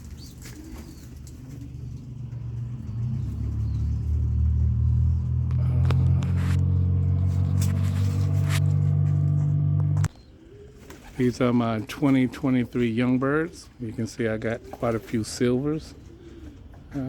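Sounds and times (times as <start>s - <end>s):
low mechanical drone: 1.1s - 10.2s.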